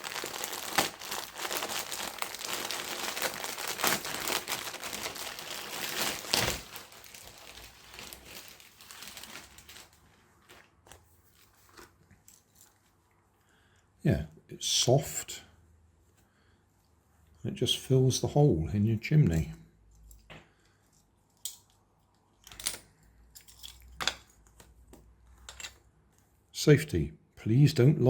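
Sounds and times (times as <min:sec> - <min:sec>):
packaging crinkling and tearing: 0:00.0 - 0:12.9.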